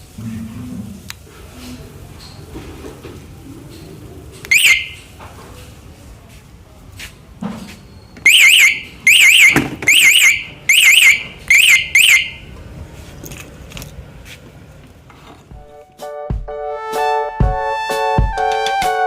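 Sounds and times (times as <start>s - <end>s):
alarm siren warbling chirps: 4.5s - 5.0s, 8.3s - 12.5s.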